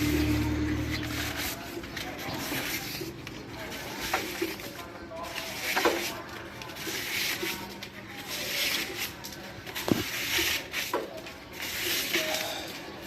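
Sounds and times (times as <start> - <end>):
parts and wiring rubbing: 0.0 - 13.0.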